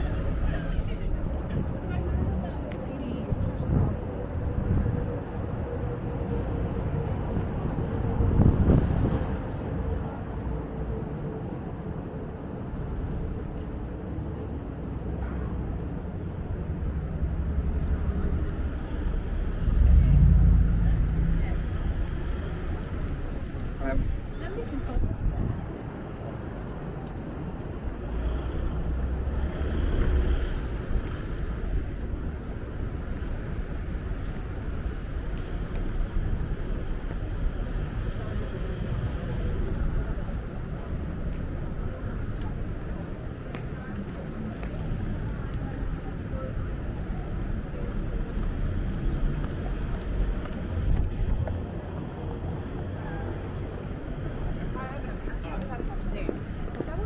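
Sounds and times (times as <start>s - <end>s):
passing vehicles rumbling: 0.0s - 57.0s
faint engine hum: 12.3s - 57.0s.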